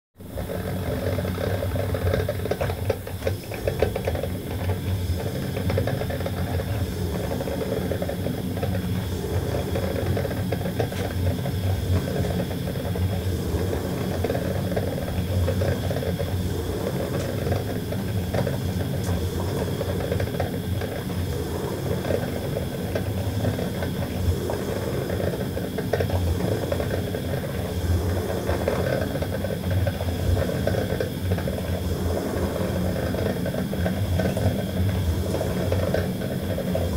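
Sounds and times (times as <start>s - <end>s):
coffee maker rattling hiss: 0.2s - 36.9s.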